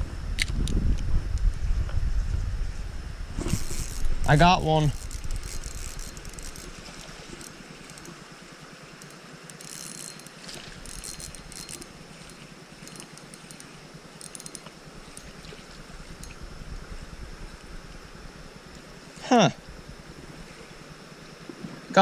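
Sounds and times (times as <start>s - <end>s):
creek water running: 3.3s - 22.0s
fishing gear metallic clicks: 3.4s - 8.2s, 9.0s - 16.4s.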